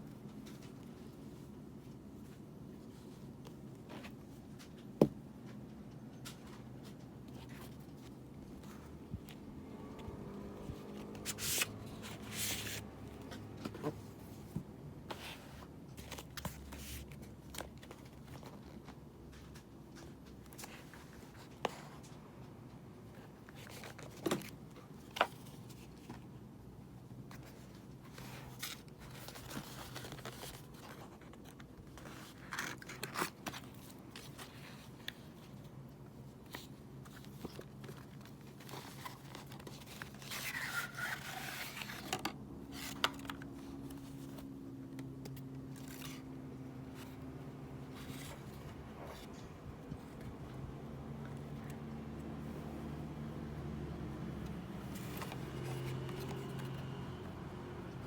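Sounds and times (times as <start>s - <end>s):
paper and plastic crinkling: 27.3s - 35.6s.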